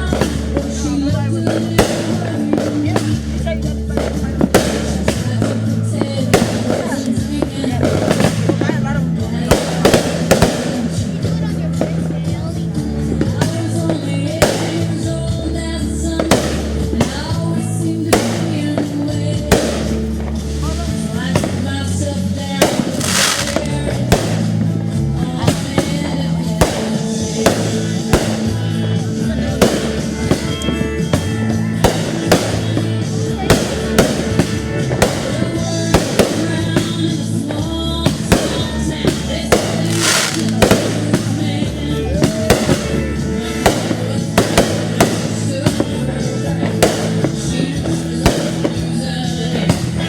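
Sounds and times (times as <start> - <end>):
fireworks bangs: 0.0 - 12.4, 16.0 - 46.0
loud music with sustained notes: 19.5 - 50.0.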